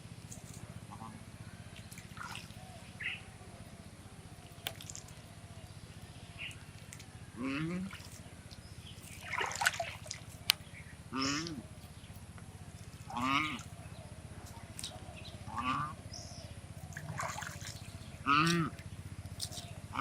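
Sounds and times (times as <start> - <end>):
swan honking: 11.1 - 11.6, 13.0 - 13.9, 14.9 - 16.0, 16.9 - 18.8, 19.4 - 20.0.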